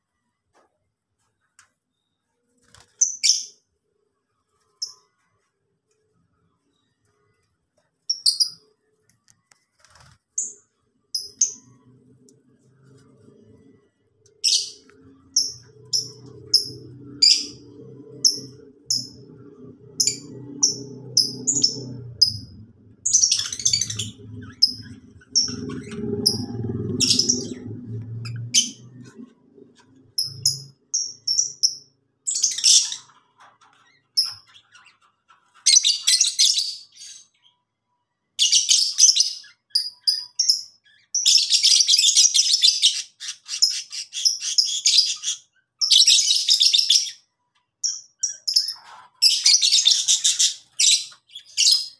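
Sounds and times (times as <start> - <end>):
lovebirds chirping: 9.8 - 37.6
low steady hum: 11.2 - 30.8.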